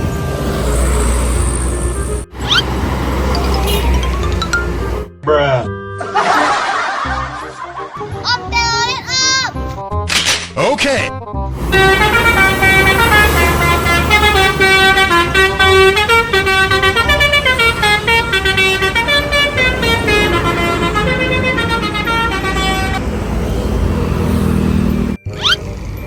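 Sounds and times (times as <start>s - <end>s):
multi-tone bus horn tune: 1.8s - 5.1s, 11.6s - 25.2s
low engine rumble: 11.5s - 25.2s.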